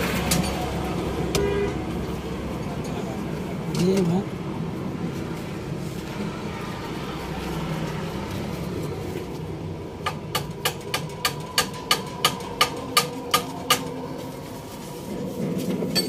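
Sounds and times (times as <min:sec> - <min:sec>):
sharp metallic taps: 0:10.0 - 0:13.9.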